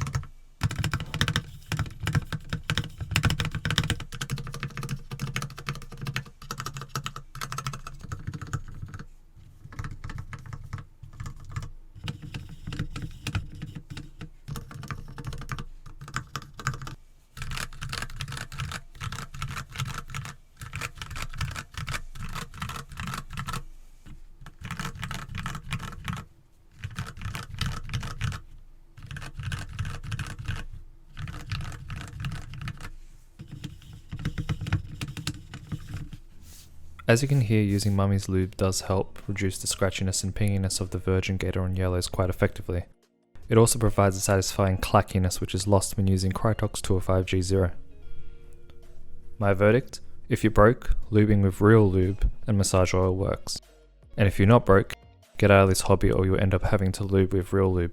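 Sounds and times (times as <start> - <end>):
typing on a mechanical keyboard: 0.0 - 23.6, 24.4 - 36.2.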